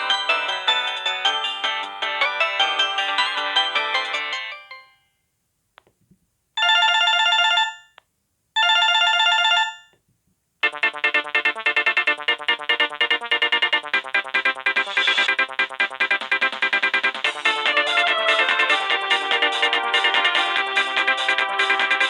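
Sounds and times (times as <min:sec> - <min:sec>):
mobile phone ringtone melody: 0:00.0 - 0:05.1, 0:06.6 - 0:08.0, 0:08.6 - 0:09.9, 0:10.6 - 0:22.0
phone ring bursts: 0:06.6 - 0:08.0, 0:08.6 - 0:09.9
electronic dance ringtone: 0:10.6 - 0:22.0.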